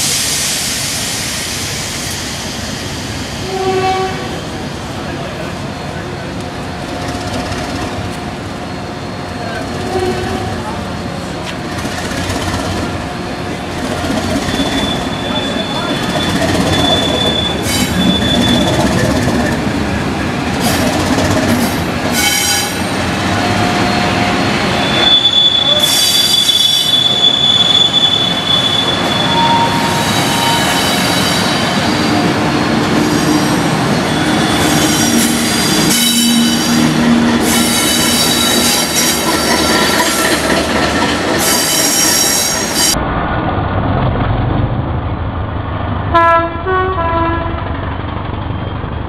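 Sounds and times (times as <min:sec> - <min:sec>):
train running on rails: 0:00.0 - 0:49.0
train wheels squealing: 0:13.8 - 0:19.6, 0:22.1 - 0:32.3, 0:32.9 - 0:43.0, 0:47.9 - 0:49.0.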